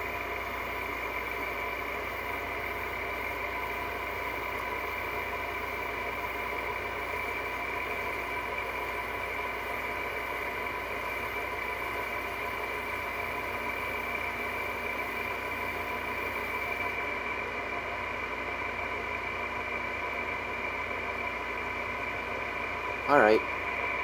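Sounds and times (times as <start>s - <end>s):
air conditioner whirring: 18.3s - 24.0s
steady high whine: 20.7s - 24.0s.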